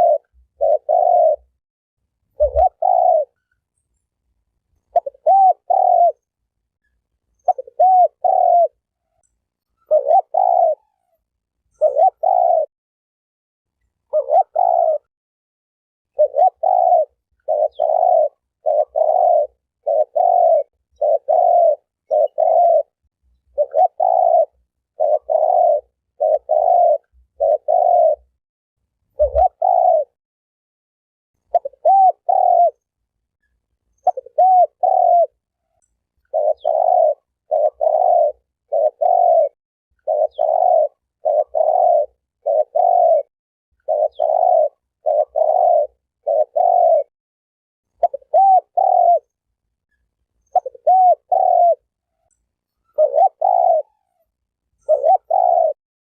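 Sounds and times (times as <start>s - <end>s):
dove cooing: 0.0s - 1.6s, 2.3s - 3.5s, 4.9s - 6.3s, 7.4s - 9.2s, 9.8s - 12.7s, 14.0s - 15.1s, 16.1s - 28.4s, 29.1s - 30.2s, 31.4s - 32.9s, 34.0s - 47.1s, 48.0s - 49.4s, 50.4s - 55.8s.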